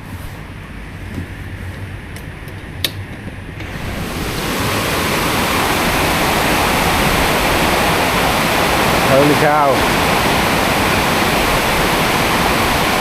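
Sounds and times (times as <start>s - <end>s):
rush of falling water: 3.6s - 13.0s.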